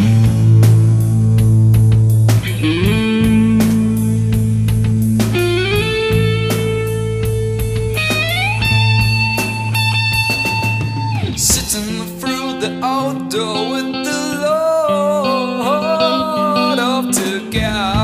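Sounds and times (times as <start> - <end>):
steady low bass note: 0.0 - 10.1
electric guitar sliding notes: 0.0 - 18.0.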